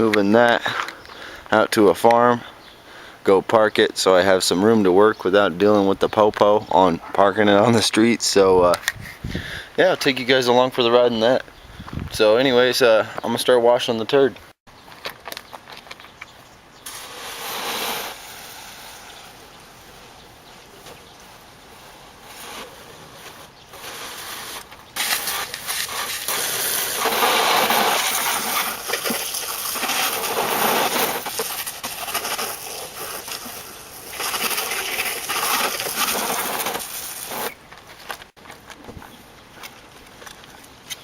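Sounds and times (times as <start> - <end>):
hose spray hitting a car: 16.8 - 37.6.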